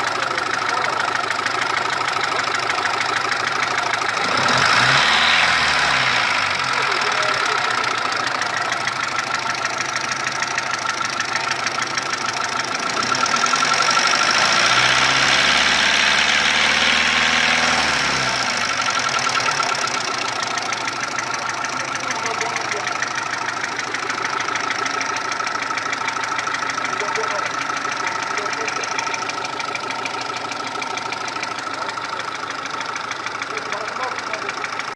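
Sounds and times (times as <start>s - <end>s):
petrol engine tapping: 0.0s - 4.2s, 6.7s - 15.1s, 18.5s - 34.9s.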